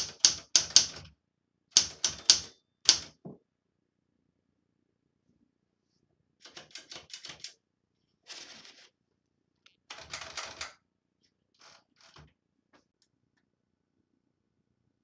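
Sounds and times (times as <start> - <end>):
manual typewriter key strikes: 1.8 - 3.2.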